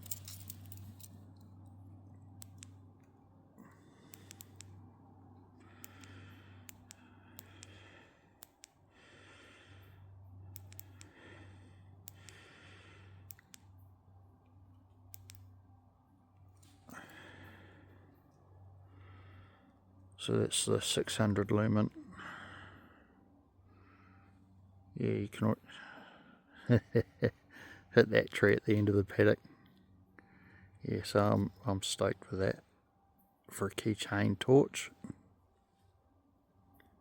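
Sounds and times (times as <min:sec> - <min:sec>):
low steady hum: 0:00.0 - 0:37.0
faint clicks: 0:02.4 - 0:04.8, 0:05.6 - 0:08.9, 0:10.5 - 0:11.2, 0:12.0 - 0:12.5, 0:13.2 - 0:13.8, 0:14.4 - 0:15.5.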